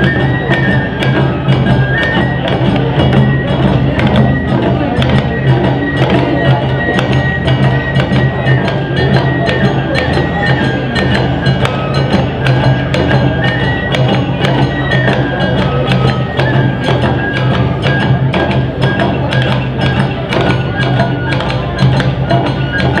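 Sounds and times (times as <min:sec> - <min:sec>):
drums: 0:00.0 - 0:23.0
flute melody: 0:00.0 - 0:23.0.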